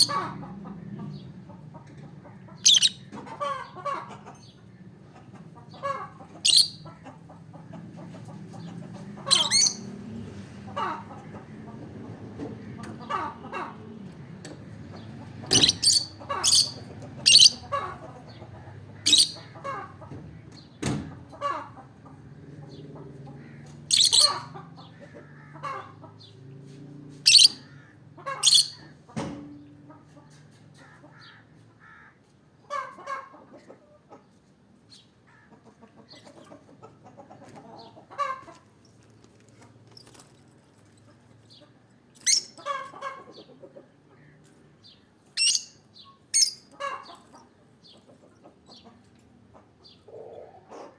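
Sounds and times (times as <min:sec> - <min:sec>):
bird soft chattering: 0:02.5 - 0:03.1, 0:06.4 - 0:06.9, 0:09.2 - 0:09.9, 0:14.9 - 0:18.4, 0:19.0 - 0:19.5, 0:23.9 - 0:24.6
lovebird shrill chirps: 0:23.9 - 0:24.4, 0:45.4 - 0:45.8.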